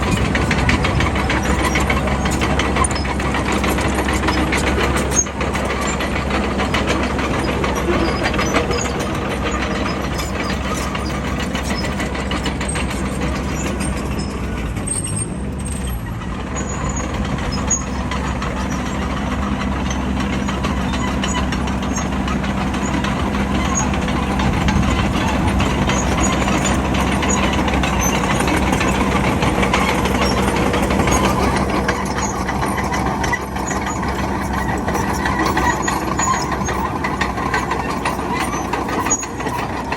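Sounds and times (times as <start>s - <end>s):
bulldozer diesel engine drone: 0.0s - 39.9s.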